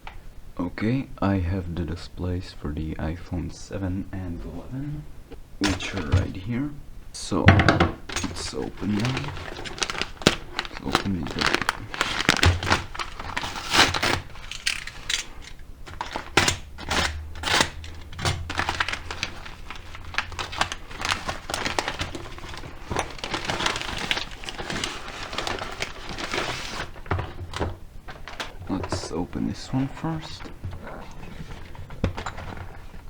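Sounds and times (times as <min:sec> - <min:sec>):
packaging crinkling and tearing: 0:08.0 - 0:33.0.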